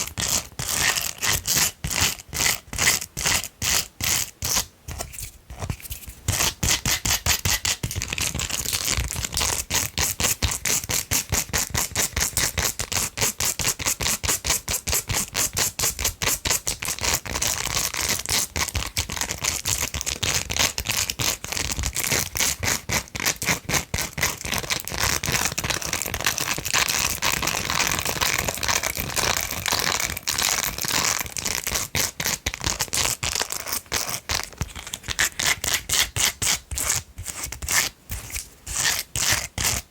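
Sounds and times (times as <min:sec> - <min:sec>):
fingernails scratching silicone brush: 0:20.3 - 0:39.9.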